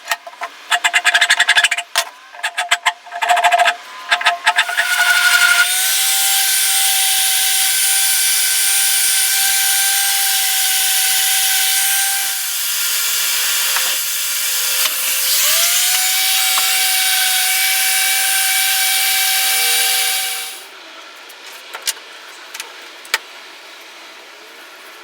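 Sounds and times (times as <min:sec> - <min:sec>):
power tool whining on wood: 0:04.5 - 0:20.7.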